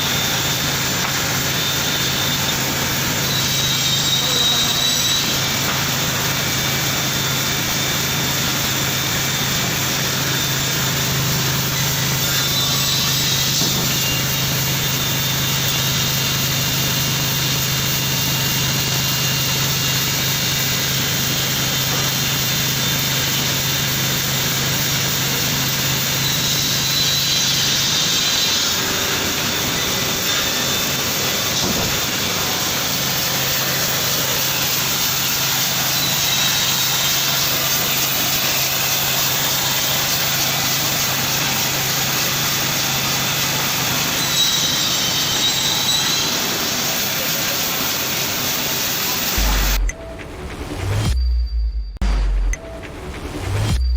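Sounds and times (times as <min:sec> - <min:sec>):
low motor hum: 0:49.4 - 0:53.9.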